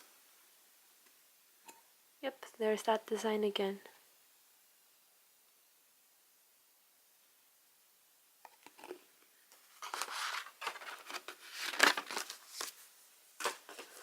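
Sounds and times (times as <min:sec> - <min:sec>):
paper rustling and crinkling: 0:09.6 - 0:14.0.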